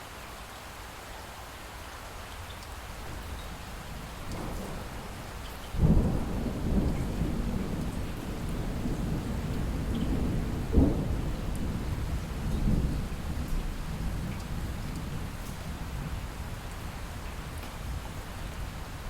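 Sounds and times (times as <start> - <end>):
light steady rain: 0.0 - 19.0
distant thunder rolling: 4.3 - 16.0
sharp thunder clap: 5.8 - 13.2.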